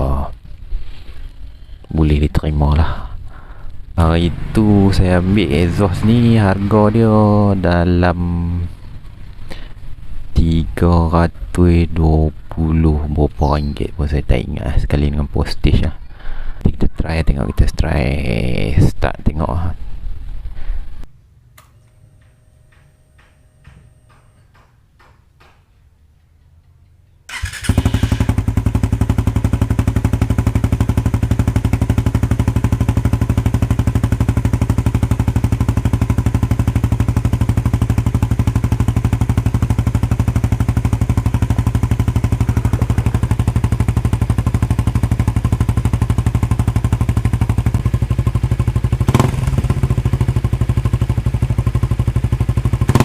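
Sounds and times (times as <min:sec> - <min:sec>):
motorcycle engine starting and idling: 0:00.0 - 0:10.6, 0:25.7 - 0:53.0.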